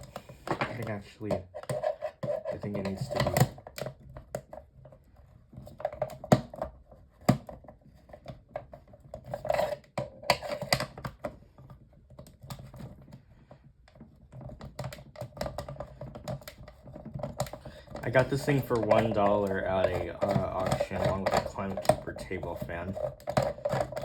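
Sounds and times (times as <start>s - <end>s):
plastic parts clicking and knocking: 0.0s - 24.0s
screwdriver unscrewing casing: 14.3s - 24.0s.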